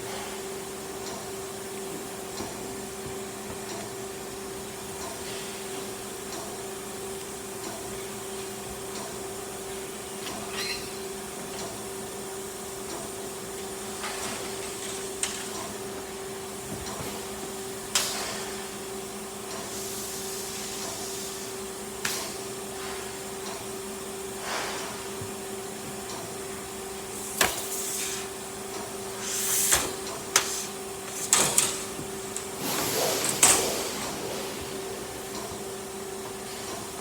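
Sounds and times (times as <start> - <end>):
cnc machine electric hum: 18.7 - 37.0
hiss: 19.6 - 23.2, 27.2 - 28.4, 29.1 - 37.0.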